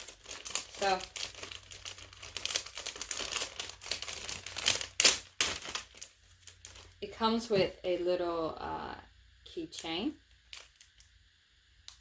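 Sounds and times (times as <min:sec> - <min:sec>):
plastic bag crinkling: 0:00.0 - 0:07.0, 0:10.4 - 0:11.1.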